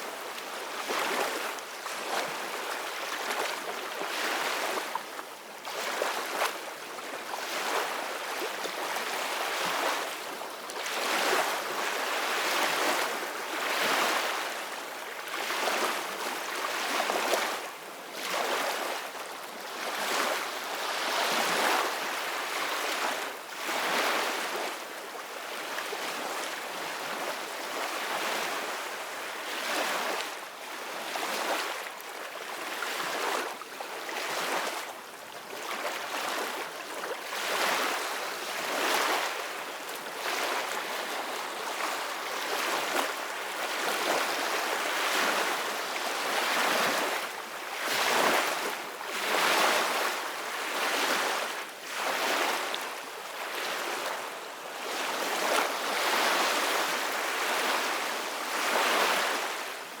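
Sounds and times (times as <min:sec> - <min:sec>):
ocean waves breaking on beach: 0:35.6 - 1:00.0.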